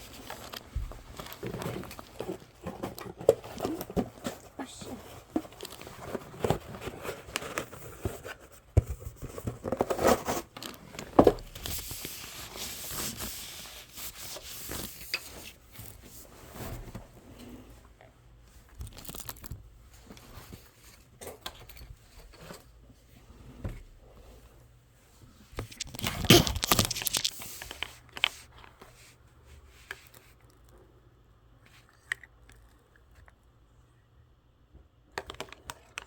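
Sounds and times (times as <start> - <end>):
small sharp clicks and crunches: 18.7 - 20.3, 25.6 - 28.9
crinkling tearing rustle: 18.8 - 19.5, 25.6 - 27.8.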